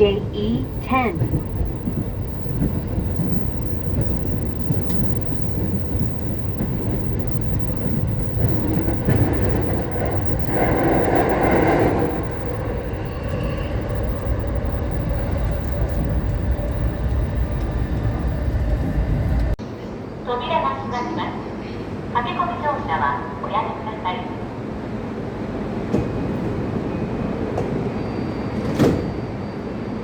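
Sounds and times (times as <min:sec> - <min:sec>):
train wheels and motors rumbling: 0:00.0 - 0:19.6.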